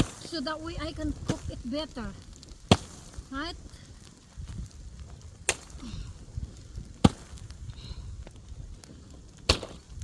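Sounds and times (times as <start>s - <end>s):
axe chopping into carcass: 2.7s - 3.0s, 7.0s - 7.3s, 9.5s - 9.8s.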